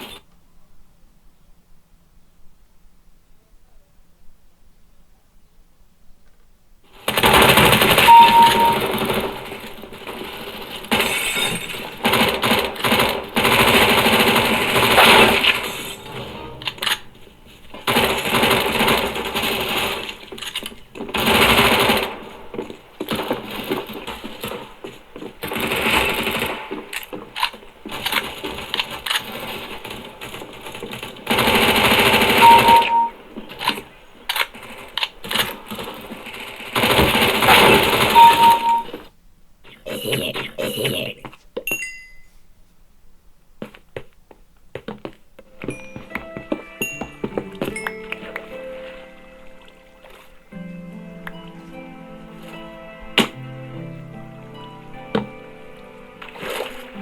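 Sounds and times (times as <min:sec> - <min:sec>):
short high beep: 0:08.0 - 0:08.9, 0:32.4 - 0:33.2, 0:38.1 - 0:39.0.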